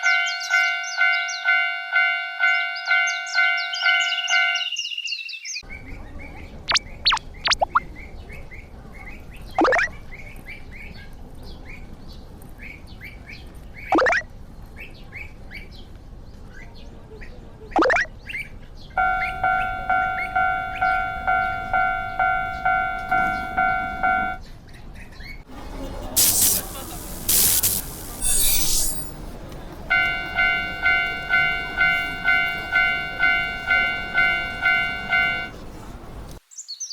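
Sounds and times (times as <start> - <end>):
railroad crossing bell ringing: 0.0 - 4.7, 19.0 - 24.4, 25.6 - 36.4
birds chirping: 2.5 - 8.5, 25.6 - 36.9
long falling whistled calls: 3.6 - 5.6, 26.1 - 29.3
outdoor hiss: 25.5 - 29.8.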